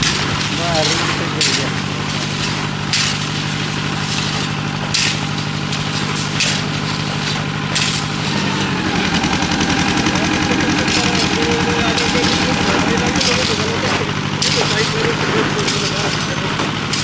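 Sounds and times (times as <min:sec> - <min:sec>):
concrete mixer engine running: 0:00.0 - 0:17.0.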